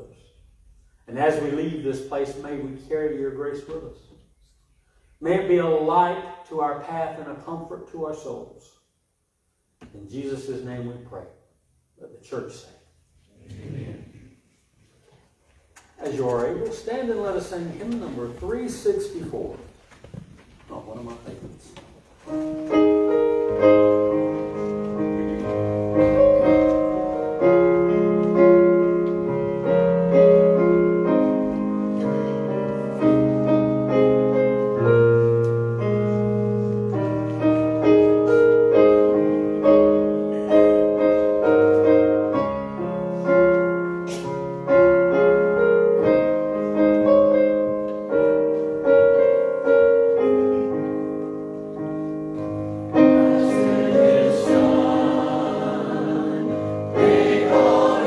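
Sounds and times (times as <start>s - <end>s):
piano playing slow hymn chords: 22.2s - 58.0s.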